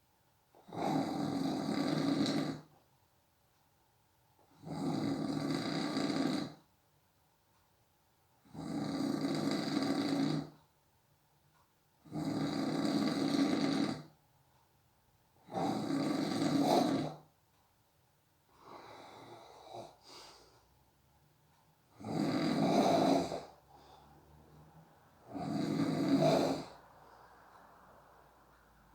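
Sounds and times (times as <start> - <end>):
person snoring: 0.6 - 2.7, 4.6 - 6.6, 8.4 - 10.6, 12.1 - 14.1, 15.4 - 17.2, 18.6 - 20.6, 21.9 - 27.3.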